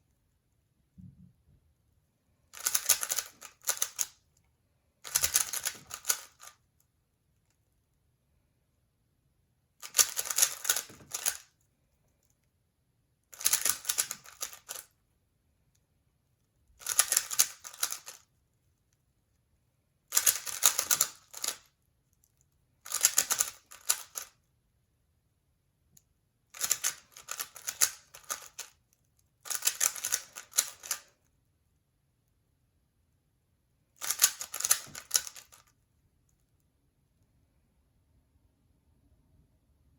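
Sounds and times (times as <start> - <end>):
plastic cube clicking: 2.6 - 4.2, 5.0 - 6.6, 9.8 - 11.5, 13.4 - 14.9, 16.8 - 18.2, 20.1 - 21.7, 22.9 - 24.4, 26.6 - 28.8, 29.4 - 31.2, 34.0 - 35.7.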